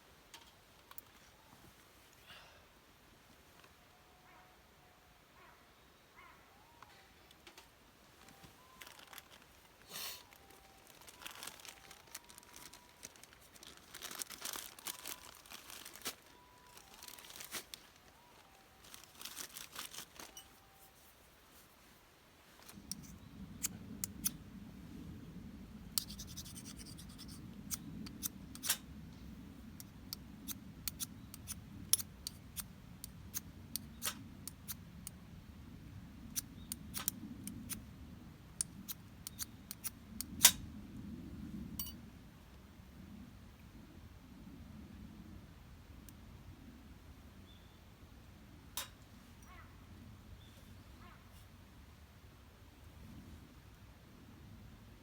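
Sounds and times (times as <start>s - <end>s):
rustling handling noises: 6.8s - 23.2s
fire rushing with pops and crackles: 22.4s - 35.1s, 35.7s - 41.8s.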